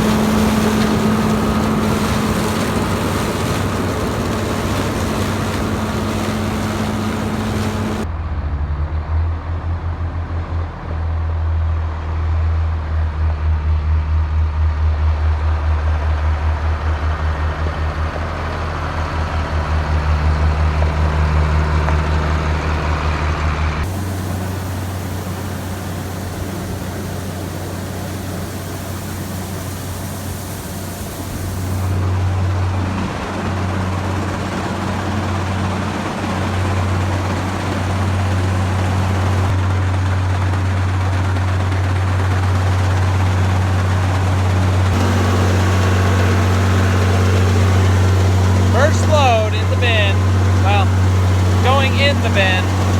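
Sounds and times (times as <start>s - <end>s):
low pulsing hum: 0.0s - 10.7s
heavy machinery engines droning: 0.0s - 52.9s.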